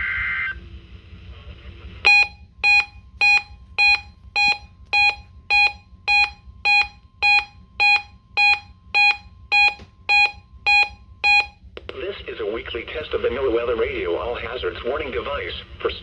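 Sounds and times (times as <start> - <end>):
shrill alarm beeps: 2.1 - 11.6.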